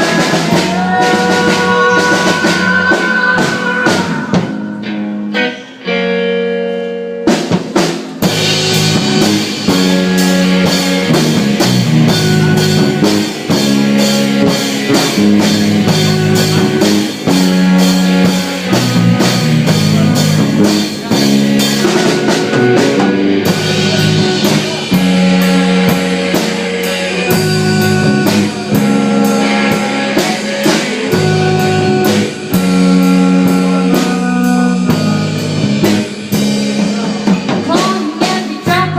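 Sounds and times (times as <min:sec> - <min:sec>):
drum kit: 0:00.0 - 0:38.9
rock band playing live: 0:00.0 - 0:38.9
electric guitar chord ringing: 0:08.2 - 0:37.1.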